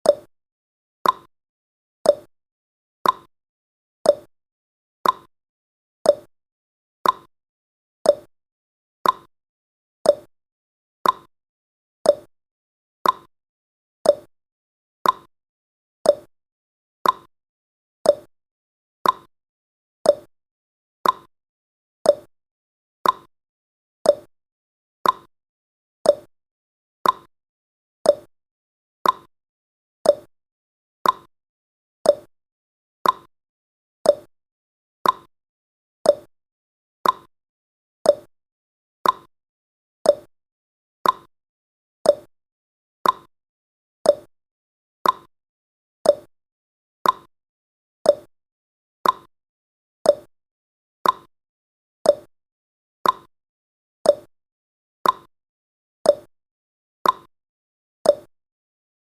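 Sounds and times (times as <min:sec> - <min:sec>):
clock ticking: 0:33.0 - 0:33.3, 0:37.0 - 0:37.3, 0:39.0 - 0:39.3, 0:43.0 - 0:43.3.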